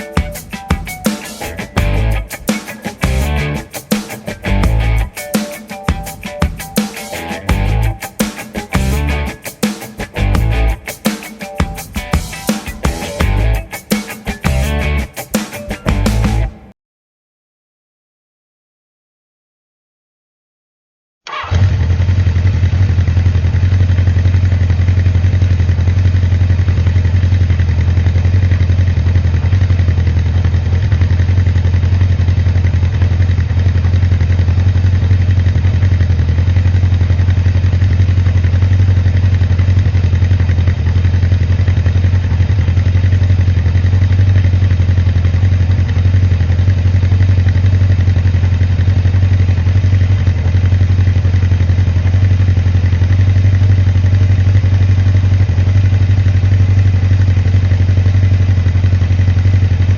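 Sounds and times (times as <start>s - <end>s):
motorcycle engine idling: 0.2s - 5.2s, 5.9s - 15.3s, 21.3s - 59.9s.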